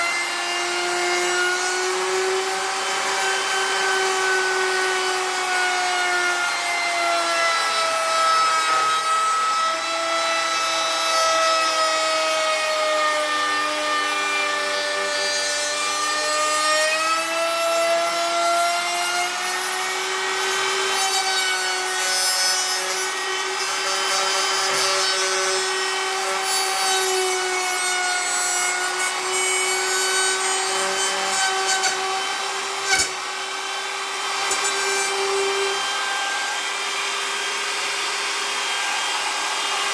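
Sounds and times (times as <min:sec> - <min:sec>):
power tool whining: 0:00.0 - 0:39.9
rough grinding noise: 0:34.3 - 0:35.9.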